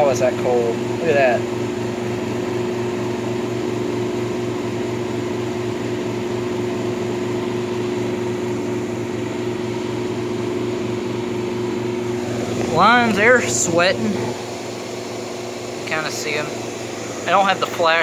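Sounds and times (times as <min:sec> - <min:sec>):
window air conditioner running: 0:00.0 - 0:18.0
pulsing compressor hum: 0:12.1 - 0:14.8.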